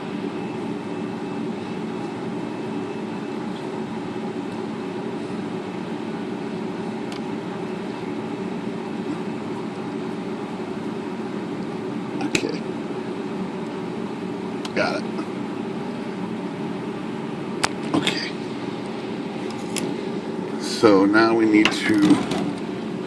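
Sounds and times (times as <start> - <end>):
low machine hum: 0.0 - 23.0.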